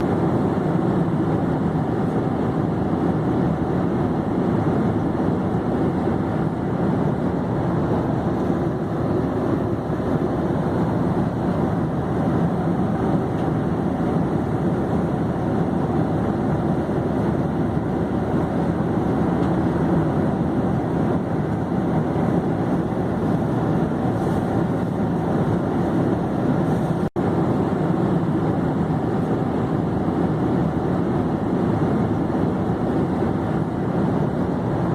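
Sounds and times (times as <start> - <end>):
airplane drone in flight: 0.0 - 34.9.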